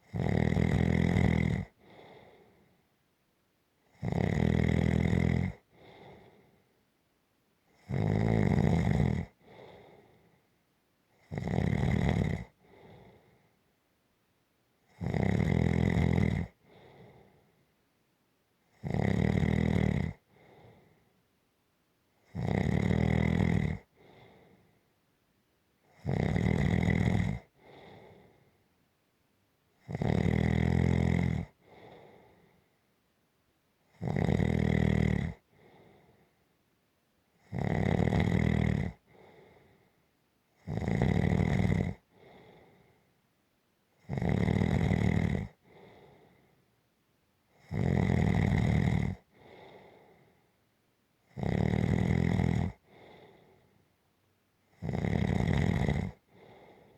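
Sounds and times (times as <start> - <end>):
person snoring: 0.0 - 2.5, 3.9 - 6.4, 7.8 - 10.1, 11.2 - 13.2, 14.9 - 17.3, 18.8 - 20.8, 22.3 - 24.4, 26.0 - 28.3, 29.8 - 32.4, 33.9 - 35.9, 37.4 - 39.6, 40.6 - 42.7, 44.0 - 46.2, 47.6 - 50.1, 51.3 - 53.6, 54.7 - 56.9
faint breath: 1.8 - 2.9, 5.7 - 6.9, 9.4 - 10.6, 12.6 - 13.7, 16.5 - 17.8, 20.2 - 21.3, 23.8 - 25.0, 27.5 - 28.8, 31.5 - 32.9, 35.4 - 36.6, 39.0 - 40.1, 42.0 - 43.2, 45.5 - 46.8, 49.2 - 50.6, 52.8 - 54.0, 56.2 - 56.9.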